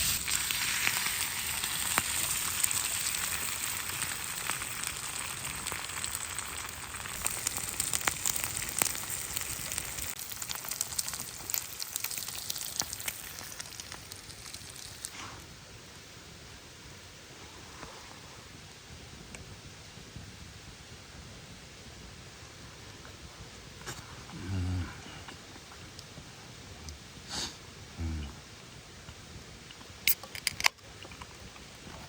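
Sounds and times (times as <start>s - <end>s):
food sizzling in a frying pan: 0.0s - 15.4s.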